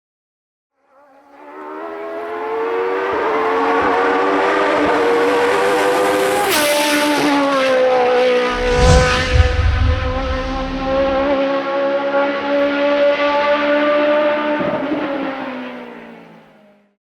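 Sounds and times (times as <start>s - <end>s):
race car engine at high revs: 1.4s - 9.2s
low rumble: 8.5s - 11.4s.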